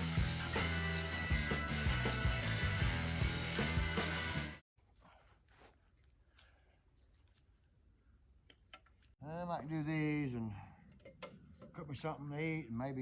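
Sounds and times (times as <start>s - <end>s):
background music: 0.0s - 4.6s
crickets chirping: 4.8s - 13.0s
man speaking: 9.2s - 10.7s, 11.7s - 13.0s.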